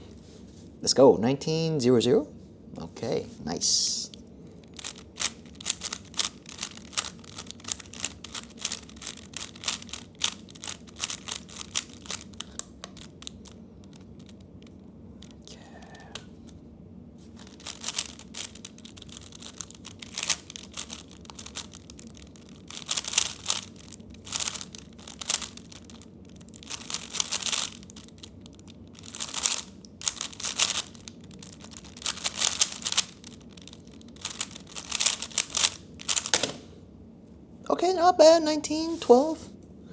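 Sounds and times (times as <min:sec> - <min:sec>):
puzzle cube clicking: 0:04.8 - 0:14.4, 0:17.4 - 0:26.0, 0:26.6 - 0:28.3, 0:29.0 - 0:36.6.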